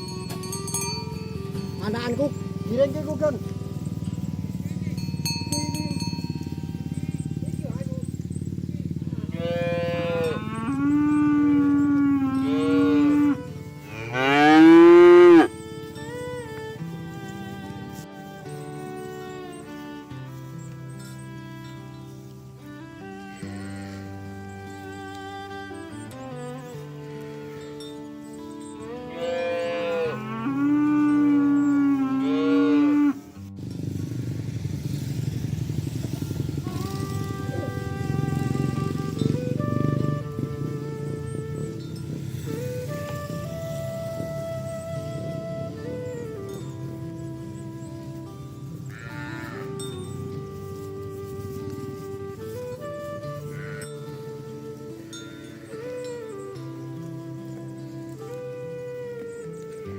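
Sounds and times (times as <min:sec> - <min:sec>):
background music: 0:00.0 - 0:08.2, 0:09.2 - 0:33.6, 0:34.7 - 0:59.9
cattle mooing: 0:00.0 - 0:16.7, 0:22.6 - 0:33.3, 0:35.0 - 0:40.8, 0:44.6 - 0:52.2, 0:53.4 - 0:56.4.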